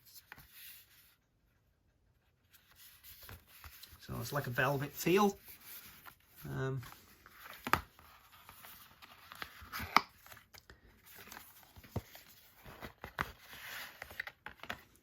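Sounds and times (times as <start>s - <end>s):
paper envelope rustling: 2.4s - 15.0s.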